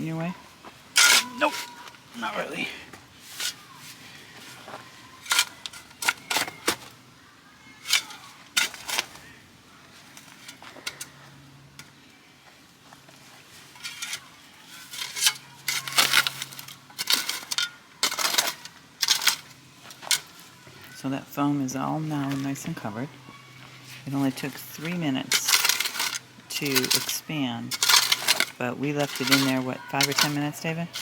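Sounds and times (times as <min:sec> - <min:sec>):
shovel scraping gravelly dirt: 0:00.9 - 0:06.9, 0:07.8 - 0:09.3, 0:13.5 - 0:20.5, 0:23.6 - 0:31.0.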